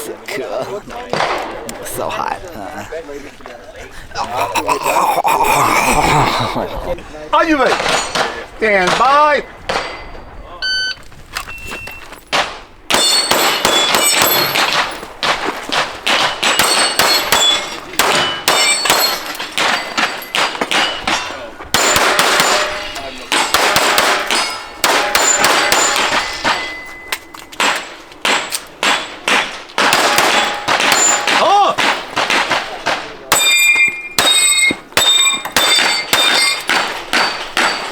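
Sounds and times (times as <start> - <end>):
steel plates ringing: 7.6 - 11.0, 12.9 - 15.0, 16.1 - 32.2, 33.3 - 37.9
rapid pistol shots: 12.3 - 26.8, 27.6 - 33.5.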